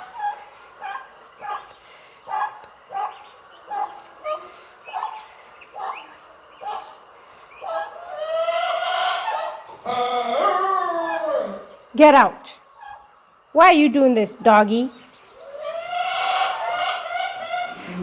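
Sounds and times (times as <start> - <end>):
dog whimpering yelps: 7.7 - 11.7, 15.2 - 17.0
dog whining howl: 7.7 - 11.8, 15.2 - 18.0.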